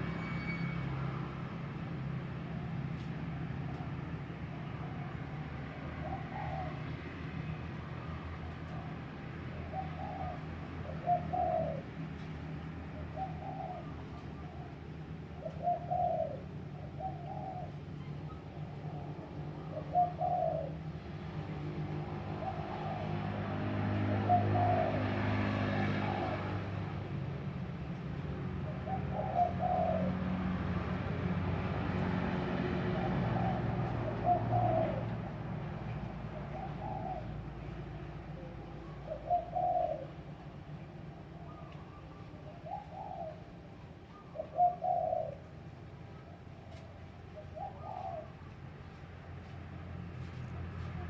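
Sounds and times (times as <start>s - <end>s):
bird cooing: 6.0s - 7.0s, 8.4s - 12.3s, 12.9s - 21.0s, 22.3s - 26.6s, 28.6s - 30.5s, 32.9s - 35.4s, 36.3s - 40.6s, 41.3s - 48.6s.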